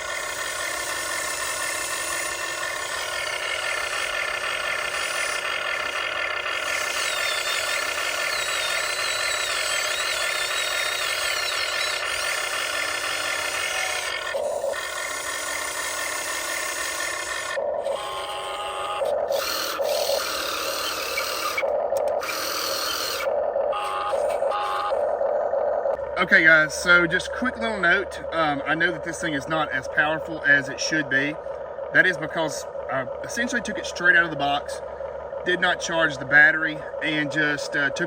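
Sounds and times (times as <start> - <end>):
electric motors whining: 0.0 - 38.0.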